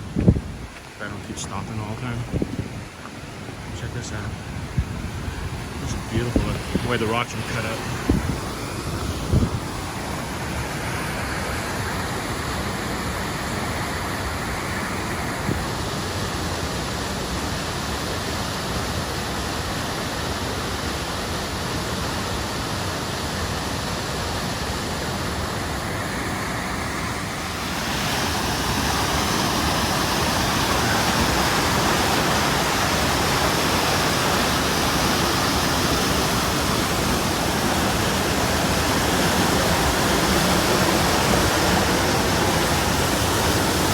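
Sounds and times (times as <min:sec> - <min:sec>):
mountain creek rushing: 0:00.0 - 0:43.9.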